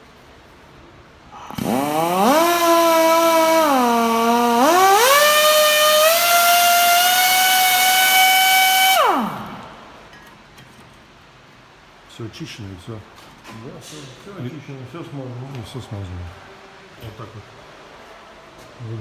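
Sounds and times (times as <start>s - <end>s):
power tool motor spinning: 1.5s - 9.8s.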